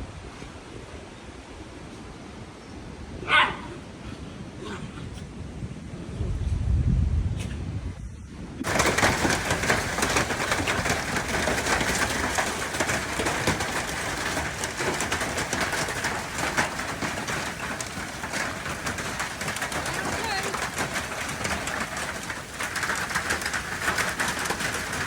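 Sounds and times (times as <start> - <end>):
heavy rain and hail: 8.6 - 25.0.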